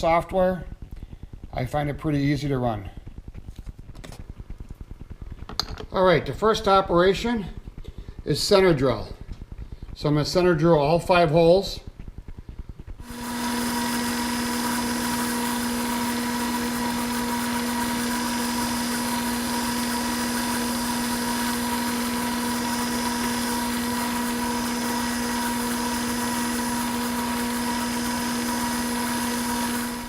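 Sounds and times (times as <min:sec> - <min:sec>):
milling machine humming: 0:12.9 - 0:30.0.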